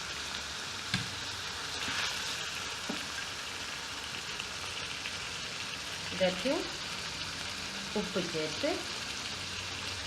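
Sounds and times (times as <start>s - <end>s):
chicken sizzling in a pot: 0.0s - 10.0s.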